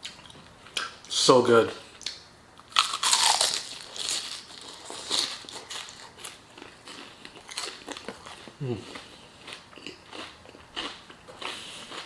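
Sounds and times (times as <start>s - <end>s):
crunching fried chicken: 2.6s - 12.0s.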